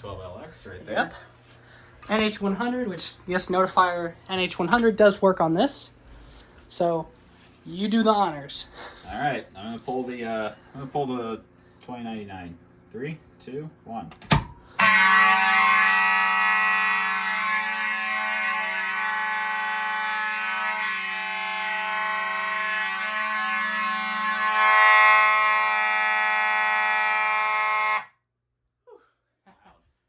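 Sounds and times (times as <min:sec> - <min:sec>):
fire alarm horns: 0:14.6 - 0:28.3.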